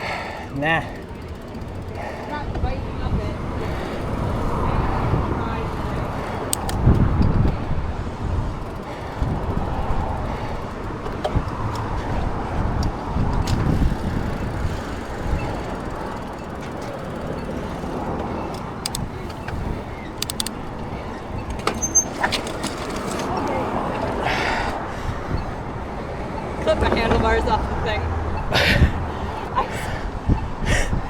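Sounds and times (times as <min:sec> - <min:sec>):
passing cars traffic noise: 0:00.0 - 0:31.0
short clicks and low knocks: 0:16.8 - 0:22.8.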